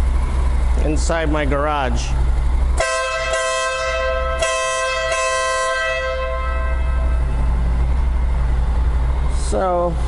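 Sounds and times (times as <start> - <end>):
low steady hum: 0.0 - 10.0
motorcycle horn two-tone blast: 2.8 - 7.8.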